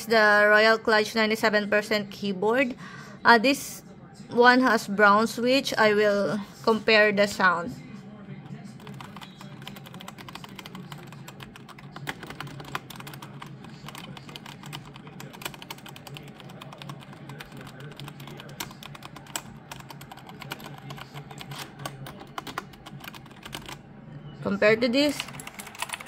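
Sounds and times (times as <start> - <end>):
fast keyboard typing: 8.6 - 23.9, 25.0 - 26.0.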